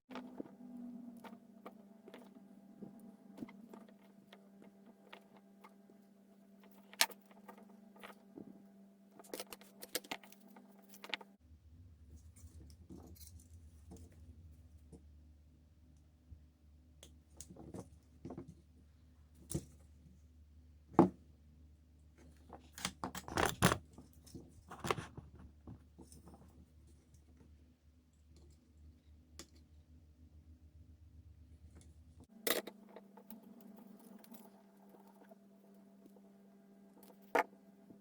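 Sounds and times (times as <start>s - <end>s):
tools and small parts handled: 9.2s - 11.3s, 12.1s - 14.2s
steady low hum: 10.8s - 17.3s.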